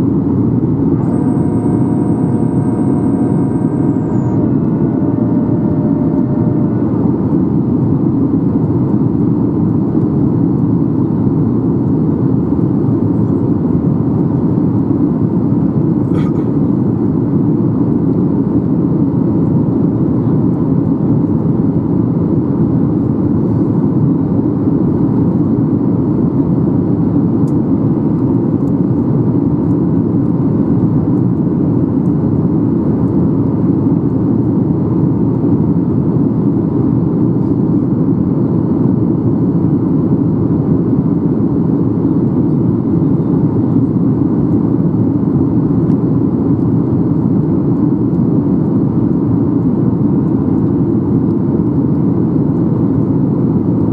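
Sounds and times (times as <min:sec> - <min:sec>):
airplane cabin rumble: 0:00.0 - 0:53.9
faint steady tone: 0:00.8 - 0:08.2.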